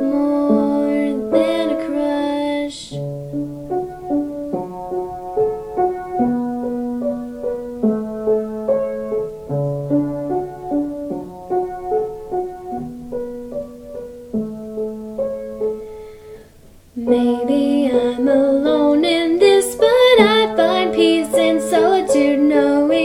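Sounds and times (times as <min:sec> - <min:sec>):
gentle piano playing: 0:00.0 - 0:23.0.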